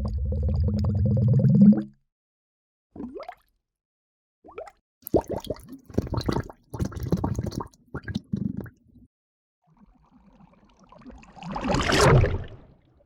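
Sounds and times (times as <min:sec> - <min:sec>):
water bubbling and gurgling: 0:00.0 - 0:02.0, 0:04.5 - 0:08.8, 0:09.8 - 0:12.9.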